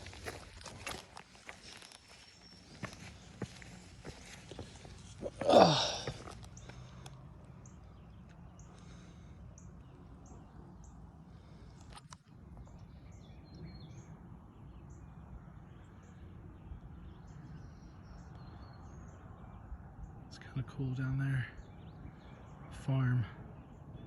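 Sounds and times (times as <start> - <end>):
outdoor background noise: 0.0 - 24.0.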